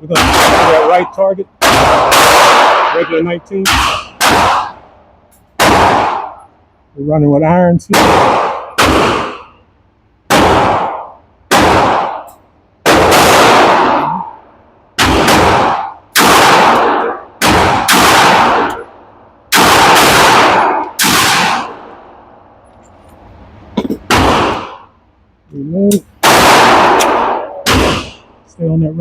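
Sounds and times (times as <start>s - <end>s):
pistol shots ringing out: 0.0s - 5.0s, 5.6s - 6.5s, 7.9s - 9.6s, 10.2s - 22.2s, 24.0s - 24.9s, 25.9s - 28.4s.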